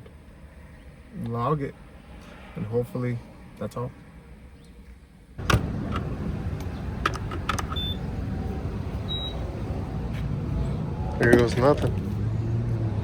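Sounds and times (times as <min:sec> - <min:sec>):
car engine starting and idling: 0:05.4 - 0:13.0.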